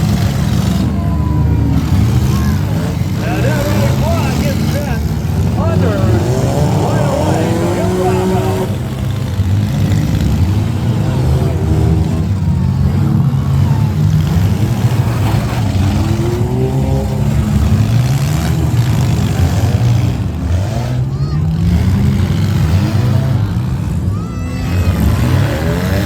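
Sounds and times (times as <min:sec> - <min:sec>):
minivan engines revving: 0:00.0 - 0:26.0.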